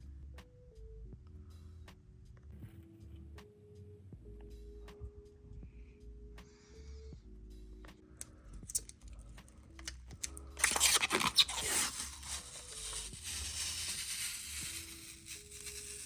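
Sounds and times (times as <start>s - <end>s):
background music: 0.0s - 16.0s
plastic packaging tearing: 9.8s - 16.0s.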